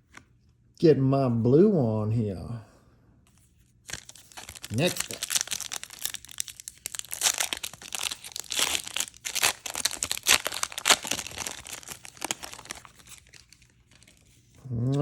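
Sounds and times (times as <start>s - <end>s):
foil wrapper tearing and crinkling: 3.9s - 14.3s.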